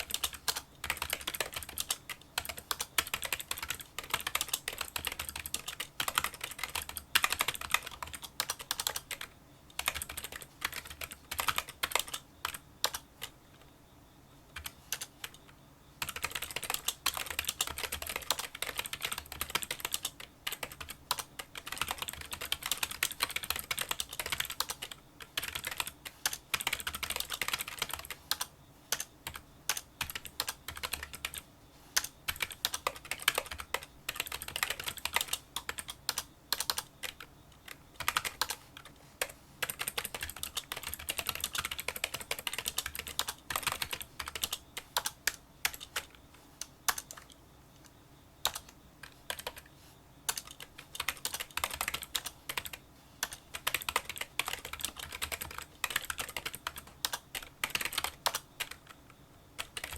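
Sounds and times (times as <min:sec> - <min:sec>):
keyboard typing clicks: 0:00.0 - 0:13.7, 0:14.6 - 0:31.4, 0:32.0 - 0:49.7, 0:50.3 - 0:59.9.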